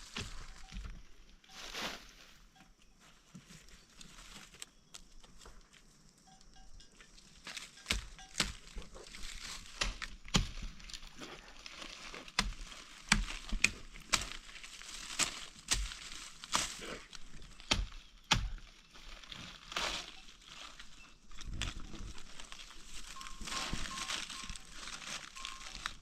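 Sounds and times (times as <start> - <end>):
sharp knocks and crunches: 0.0 - 2.1, 7.4 - 26.0.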